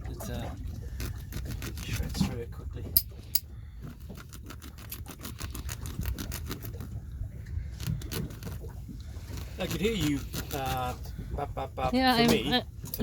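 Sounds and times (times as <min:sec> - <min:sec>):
knife sawing through fishing net: 0:00.6 - 0:02.4, 0:03.8 - 0:07.0, 0:07.6 - 0:11.0.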